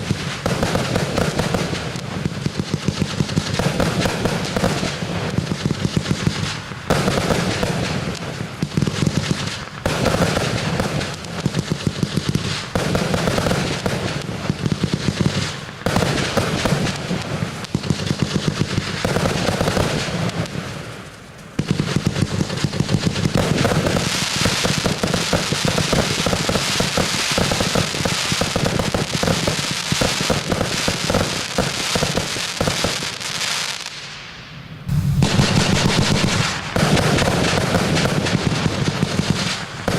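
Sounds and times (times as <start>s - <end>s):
firecracker bangs: 34.0s - 39.9s.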